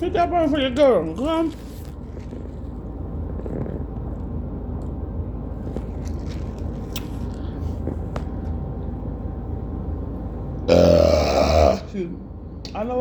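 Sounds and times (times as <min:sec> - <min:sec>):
steady low hum: 0:00.0 - 0:13.0
loud rough burp: 0:10.7 - 0:11.9.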